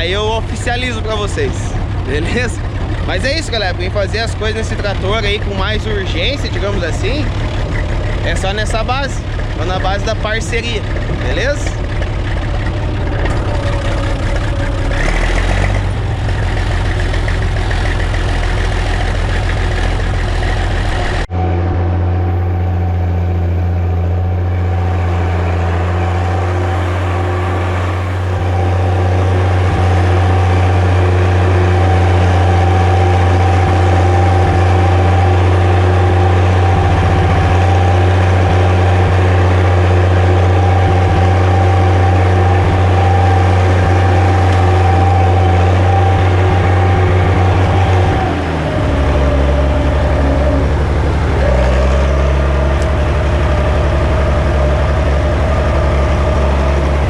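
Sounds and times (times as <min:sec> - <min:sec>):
tractor diesel engine running: 0:00.0 - 0:57.0
steady higher tone: 0:20.6 - 0:57.0.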